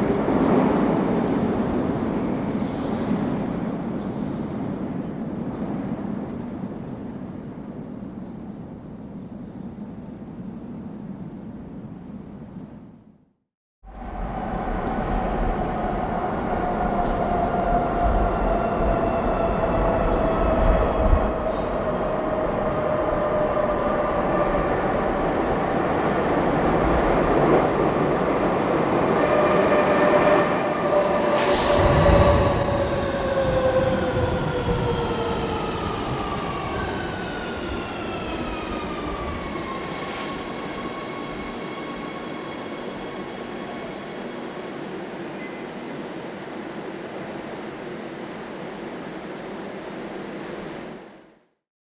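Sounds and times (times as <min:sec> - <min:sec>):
subway train motors whining: 0:13.9 - 0:51.5.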